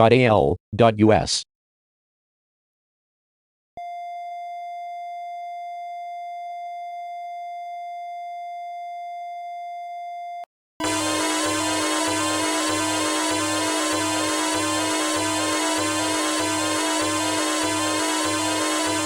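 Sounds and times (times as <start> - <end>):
loud electronic music: 10.8 - 19.0
steady electronic alert tone: 10.8 - 19.0.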